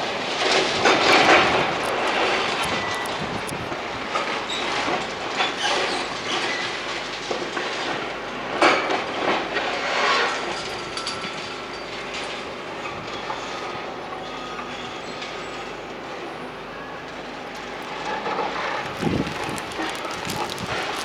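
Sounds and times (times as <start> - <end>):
concrete and metal crunching: 18.8 - 21.0.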